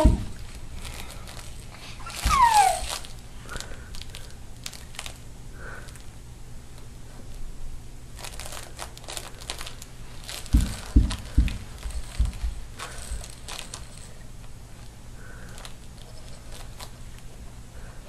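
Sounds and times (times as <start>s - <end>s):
dull thumps: 0.0s - 0.6s, 10.2s - 13.4s
crinkling and rustling handling: 0.0s - 7.4s, 8.1s - 17.6s
baby squealing: 2.0s - 3.1s.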